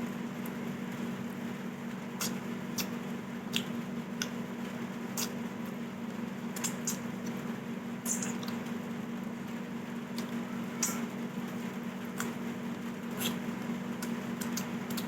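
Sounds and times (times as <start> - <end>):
steady low hum: 0.0 - 15.0
mouth clicks and smacks eating: 2.2 - 4.4, 5.1 - 5.4, 6.5 - 7.4, 8.0 - 8.6, 12.0 - 12.4, 13.1 - 15.0.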